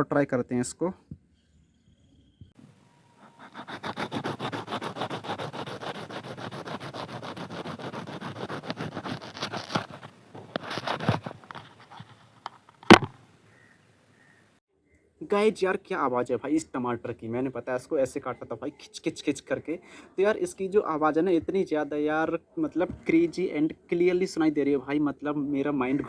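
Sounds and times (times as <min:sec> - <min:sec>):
knife sawing through tomato: 0:03.2 - 0:11.2
sharp knock: 0:12.9 - 0:13.1.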